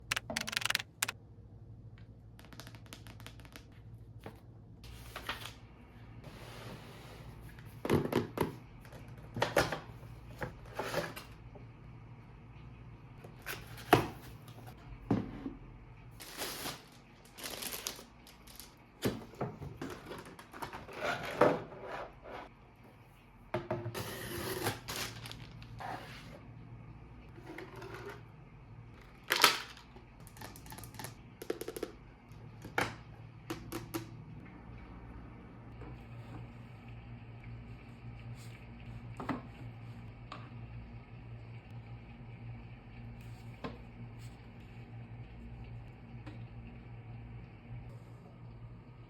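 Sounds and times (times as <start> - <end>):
packaging clicks and rustles: 0.1 - 1.2, 16.3 - 18.8.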